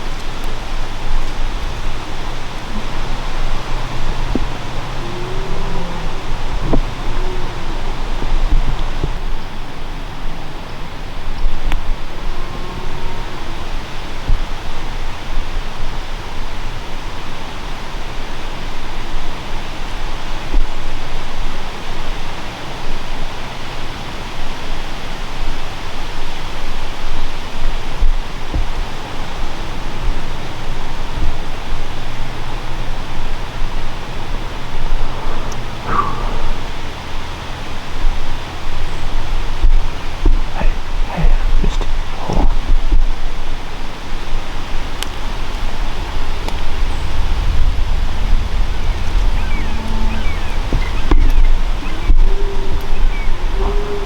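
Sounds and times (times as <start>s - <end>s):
wind buffeting microphone: 0.0s - 54.0s
faint clicks: 28.0s - 43.2s, 44.9s - 47.6s, 48.3s - 53.8s.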